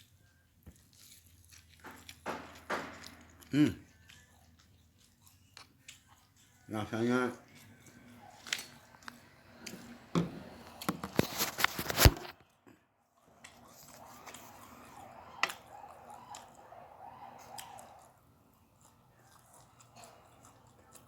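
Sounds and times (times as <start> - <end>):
faint chewing: 0.0 - 2.2, 3.2 - 15.2, 16.2 - 21.0.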